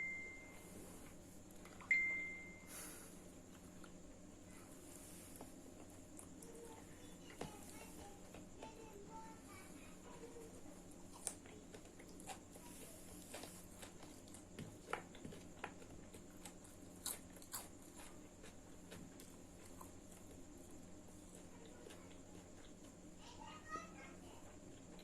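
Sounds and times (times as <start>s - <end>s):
faint hum: 0.0s - 25.0s
person chewing and biting: 10.9s - 23.0s.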